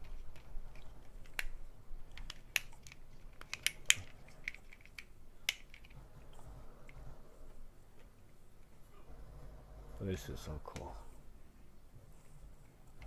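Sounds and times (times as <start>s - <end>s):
plastic puzzle segments clicking: 0.0s - 6.0s.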